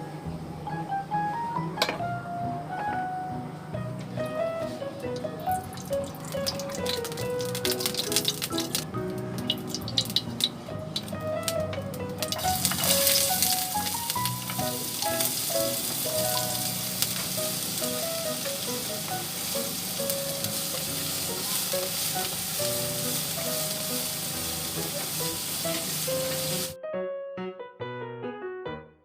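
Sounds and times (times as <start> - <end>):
simple background music melody: 0.0 - 29.0
food frying with loud sizzle: 4.6 - 26.8.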